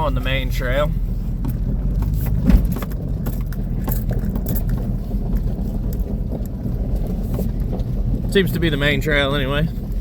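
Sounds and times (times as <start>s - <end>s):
off-road vehicle engine rumble: 0.0s - 10.0s
rattles and knocks: 1.4s - 8.9s
heavy thump: 2.3s - 2.9s.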